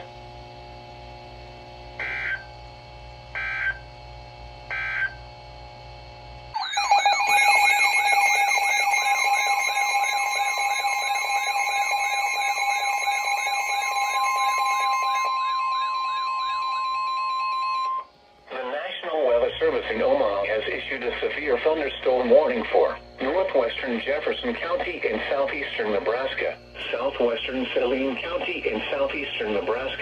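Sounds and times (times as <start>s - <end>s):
loud warbling alarm: 2.0s - 2.5s, 3.4s - 3.9s, 4.7s - 5.2s, 6.5s - 18.2s
steady alarm tone: 2.0s - 2.6s, 3.3s - 4.0s, 4.7s - 5.3s, 6.5s - 18.4s, 19.3s - 30.0s
buzzy data bursts: 6.6s - 15.6s.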